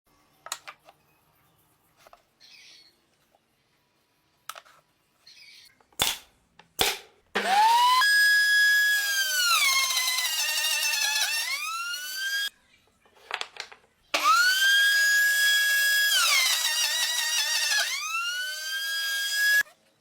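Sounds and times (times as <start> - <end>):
power tool motor whining: 7.4 - 12.5, 14.2 - 19.6.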